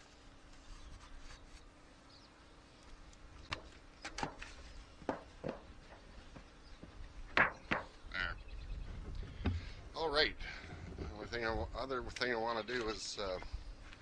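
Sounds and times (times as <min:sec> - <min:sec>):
light wooden knocks: 0:03.5 - 0:07.9.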